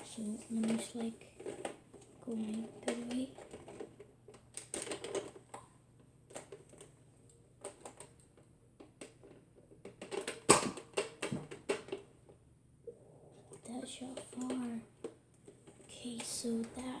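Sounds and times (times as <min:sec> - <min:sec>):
gunshot: 0:10.5 - 0:10.9.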